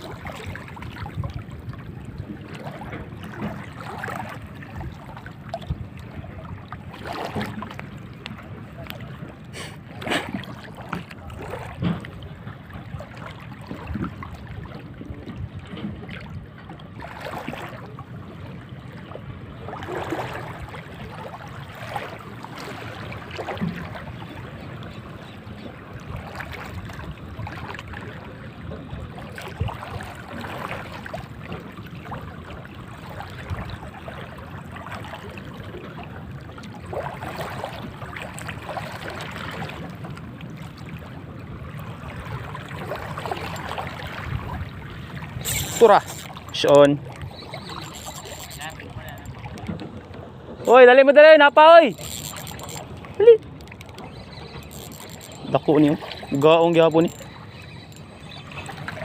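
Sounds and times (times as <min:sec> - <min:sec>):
seawater lapping: 0:00.0 - 0:59.0
small knocks and rustles: 0:47.7 - 0:50.3, 0:51.9 - 0:55.6.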